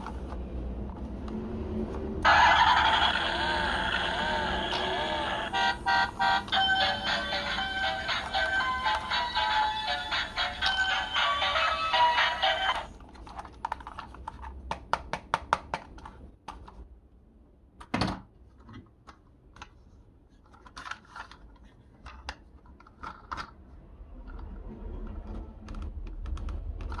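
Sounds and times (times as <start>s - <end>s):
music: 2.3s - 12.9s.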